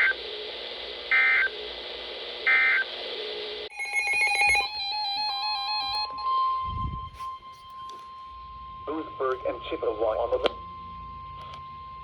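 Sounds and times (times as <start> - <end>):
radio receiver hiss: 0.0 - 6.1, 8.9 - 10.6
two-tone buzzy data bursts: 3.7 - 6.3.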